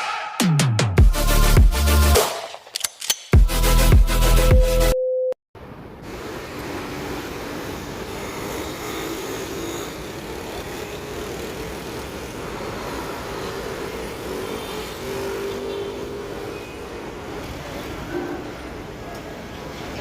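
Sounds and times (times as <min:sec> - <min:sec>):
traffic noise: 0:05.6 - 0:20.0.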